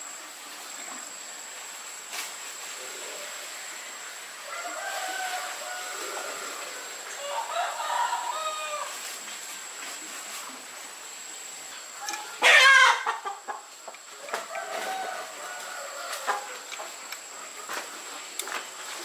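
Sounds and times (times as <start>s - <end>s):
chickens calling: 2.7s - 9.0s, 11.6s - 19.0s.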